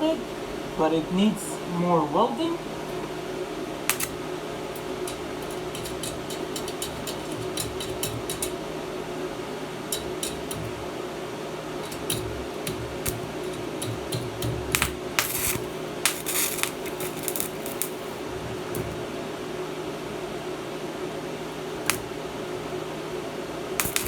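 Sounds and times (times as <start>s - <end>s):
cooling fan humming: 0.0s - 24.0s
sharp metallic clicks: 3.9s - 4.2s, 23.8s - 24.0s.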